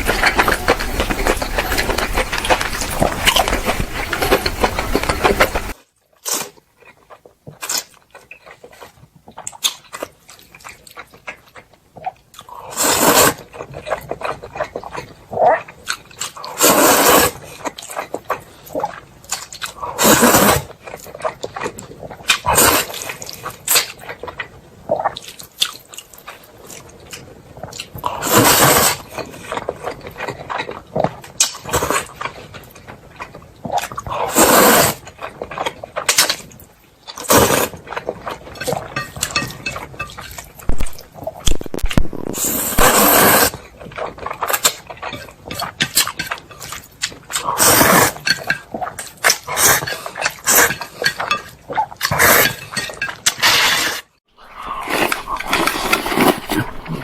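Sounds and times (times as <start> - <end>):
chewing and wet mouth noises: 0.0 - 53.4, 54.4 - 57.0
loud short slurps: 12.6 - 13.4, 34.2 - 35.0, 40.7 - 43.6, 53.5 - 57.0.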